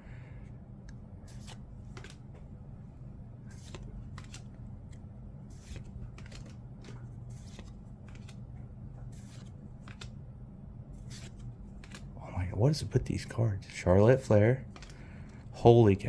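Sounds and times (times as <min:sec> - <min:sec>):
steady low hum: 0:00.0 - 0:16.0
cards sliding swishes: 0:01.2 - 0:02.4, 0:03.4 - 0:10.2, 0:11.0 - 0:12.2, 0:14.1 - 0:15.5.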